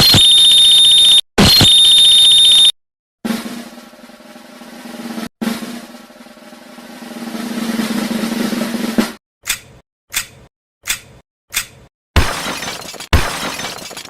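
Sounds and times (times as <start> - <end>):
snare drum roll: 3.3 - 9.2.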